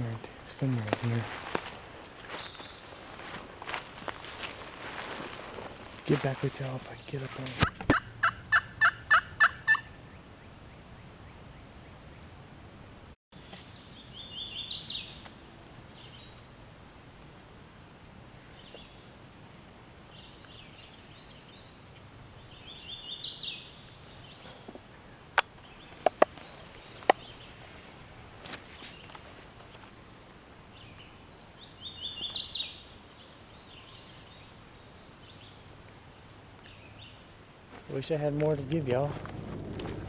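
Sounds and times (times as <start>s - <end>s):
turkey call yelps: 7.6s - 9.9s.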